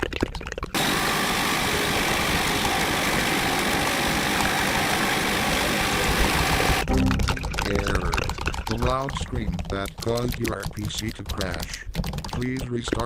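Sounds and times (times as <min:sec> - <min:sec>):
distorted scream: 0:00.8 - 0:06.9.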